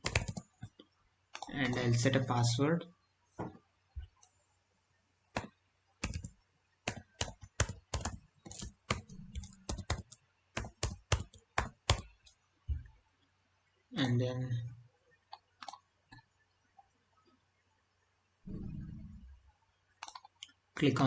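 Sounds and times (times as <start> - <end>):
computer keyboard typing: 0.0 - 1.9, 5.4 - 12.3, 15.6 - 15.8, 20.0 - 20.4.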